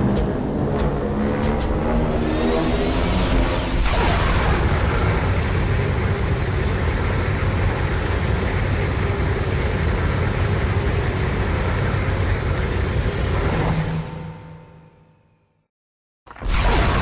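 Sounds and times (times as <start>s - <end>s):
heavy low rumble: 0.0s - 9.2s.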